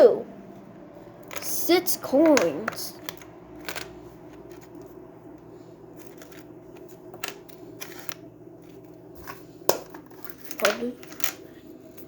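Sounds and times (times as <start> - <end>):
low room hum: 0.0 - 12.0
small objects clicking and rustling: 2.3 - 4.9, 6.0 - 11.4.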